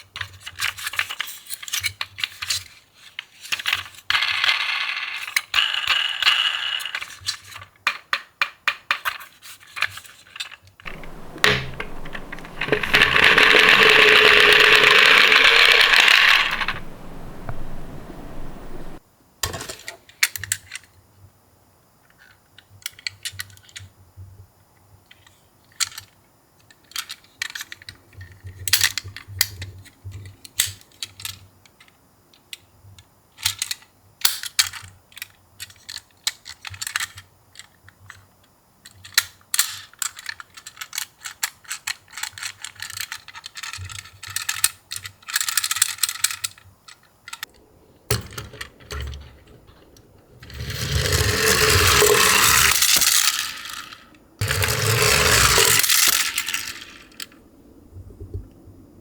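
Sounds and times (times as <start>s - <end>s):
plastic toy car clicking and rattling: 0.1s - 19.0s, 25.1s - 29.6s, 33.4s - 38.2s, 38.8s - 47.5s, 48.1s - 57.4s.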